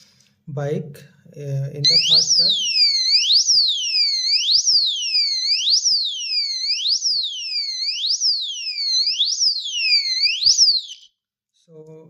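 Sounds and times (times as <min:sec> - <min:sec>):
high-pitched alarm siren: 0:01.8 - 0:11.1.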